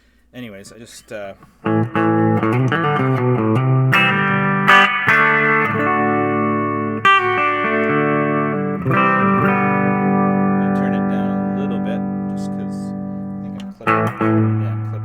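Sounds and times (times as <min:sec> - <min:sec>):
overdriven electric guitar chords: 0:01.4 - 0:15.0.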